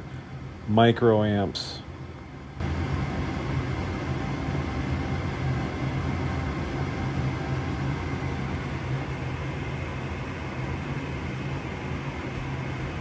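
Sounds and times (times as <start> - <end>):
furnace low hum: 0.0 - 13.0
gas furnace burners rushing: 2.6 - 13.0.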